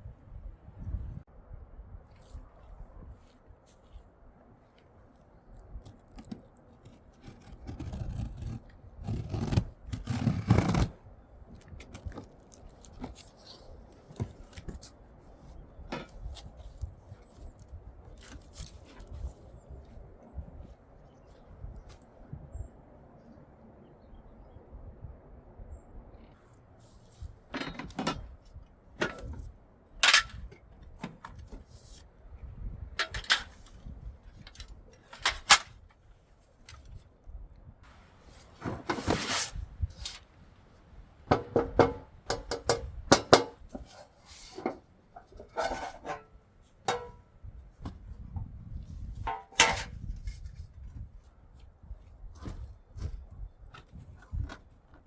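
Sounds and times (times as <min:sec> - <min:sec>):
hard objects knocking and clattering: 0:41.3 - 0:43.9.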